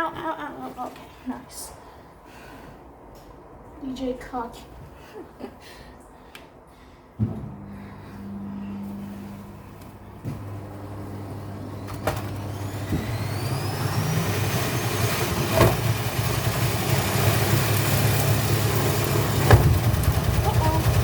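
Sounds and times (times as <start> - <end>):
washing machine drum spinning: 8.4 - 21.0
drum knocking: 19.2 - 21.0.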